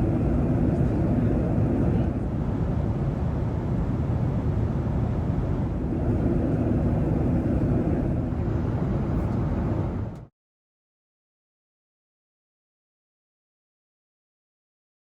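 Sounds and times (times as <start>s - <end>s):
airliner engines rumbling in cabin: 0.0s - 10.3s.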